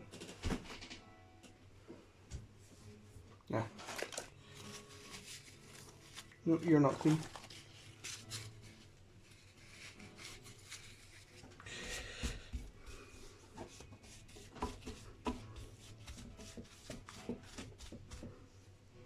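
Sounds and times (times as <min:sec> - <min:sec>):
cloth rubbing on guitar finish: 0:04.6 - 0:11.6.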